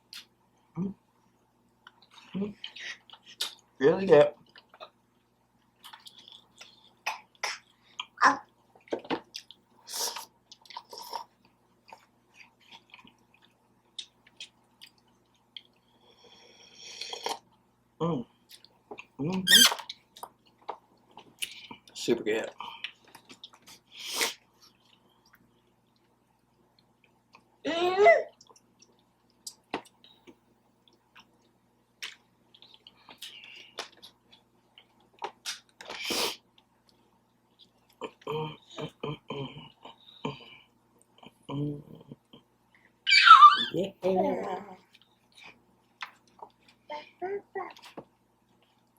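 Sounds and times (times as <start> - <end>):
chewing and wet mouth sounds: 1.3 - 3.7, 4.4 - 16.1, 18.4 - 19.2, 19.8 - 27.6, 28.3 - 38.3, 47.7 - 48.9
lip smacks while eating: 1.8 - 3.6, 28.4 - 37.0
high squeak: 43.1 - 43.8.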